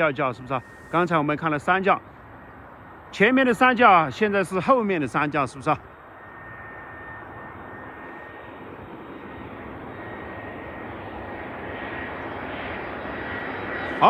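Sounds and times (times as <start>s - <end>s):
jet airliner engine rumble: 0.0s - 14.0s
thin steady whine: 0.0s - 14.0s.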